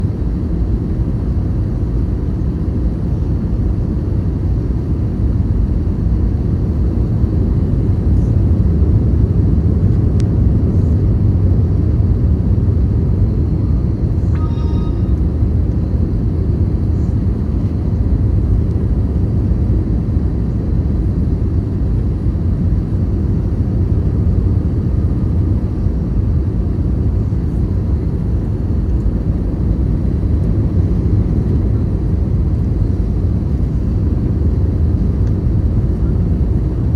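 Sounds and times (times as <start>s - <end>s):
airliner cabin rumble: 0.0s - 36.9s
high pitched tone: 14.2s - 15.5s.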